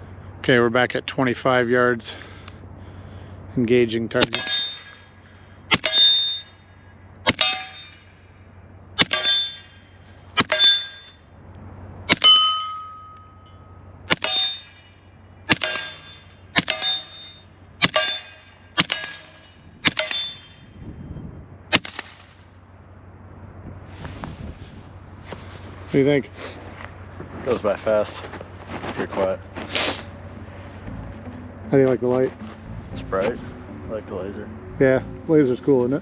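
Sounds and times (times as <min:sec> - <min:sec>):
metallic ring of steel target: 0:04.1 - 0:11.4, 0:12.0 - 0:21.1, 0:21.7 - 0:22.6
suppressed pistol shots: 0:07.2 - 0:07.7, 0:15.5 - 0:15.9, 0:21.7 - 0:22.4.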